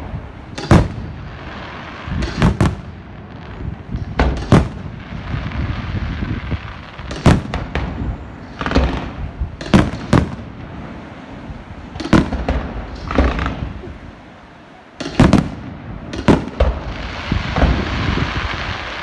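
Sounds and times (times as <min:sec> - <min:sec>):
fireworks crackling: 0:00.0 - 0:19.0
fireworks shells bursting: 0:00.5 - 0:02.8, 0:15.0 - 0:19.0.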